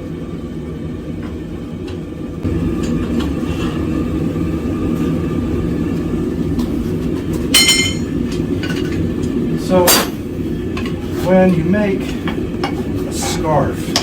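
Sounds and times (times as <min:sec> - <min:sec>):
forge burner rumble: 0:00.0 - 0:14.0.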